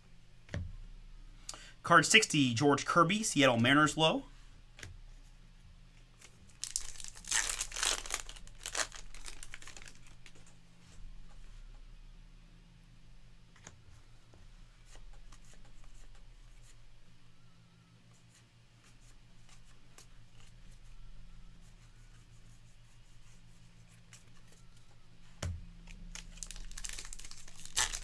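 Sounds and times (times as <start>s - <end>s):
low electrical hum: 0.0s - 28.0s
cards rustling and clicking: 6.2s - 10.6s, 25.9s - 28.0s
card pack wrapper tearing: 6.6s - 10.2s, 26.1s - 28.0s.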